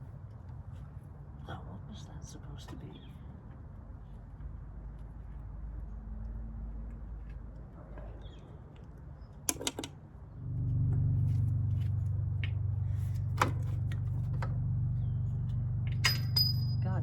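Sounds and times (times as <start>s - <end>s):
steady low hum: 9.1s - 17.0s
metallic clinks of tools: 15.9s - 16.8s.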